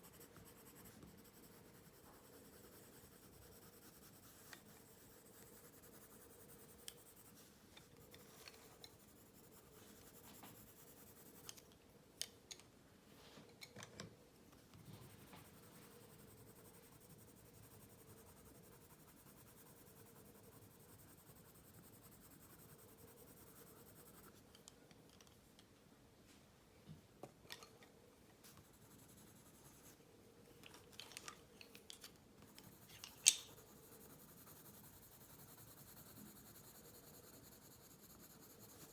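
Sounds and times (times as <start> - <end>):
pencil scratching on paper: 0.0 - 11.5, 15.0 - 24.4, 32.5 - 38.9
faint steady hum: 0.0 - 38.9.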